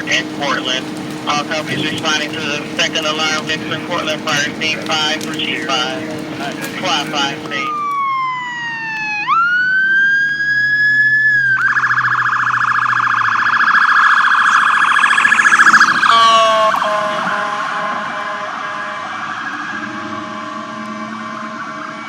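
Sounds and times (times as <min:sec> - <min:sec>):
police siren wailing and yelping: 0:00.0 - 0:22.0.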